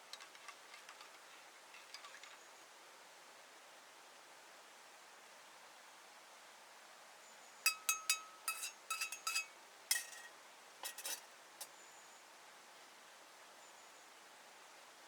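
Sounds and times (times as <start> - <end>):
utensil clinking against a dish: 7.7 - 11.3.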